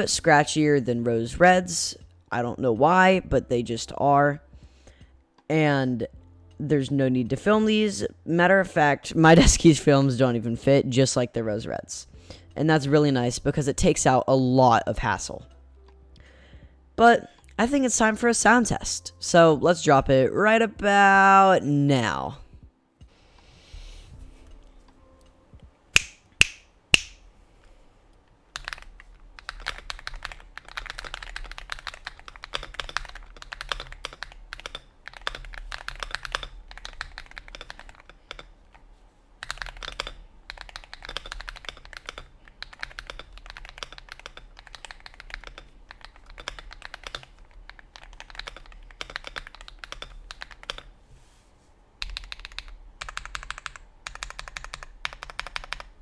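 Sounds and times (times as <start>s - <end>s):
loud sharp clicks: 26.0s - 27.2s
mechanical keyboard typing: 28.6s - 38.8s, 39.4s - 50.9s, 52.0s - 56.0s.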